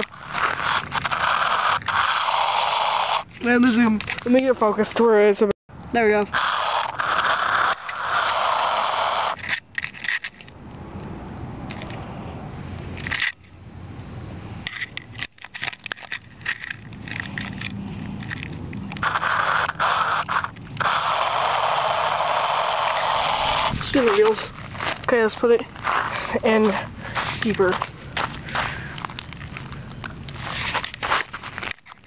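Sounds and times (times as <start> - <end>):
rc car motor and gears: 0.0 - 5.4, 6.0 - 10.6, 14.6 - 32.0
person talking: 3.4 - 6.3, 23.8 - 27.8.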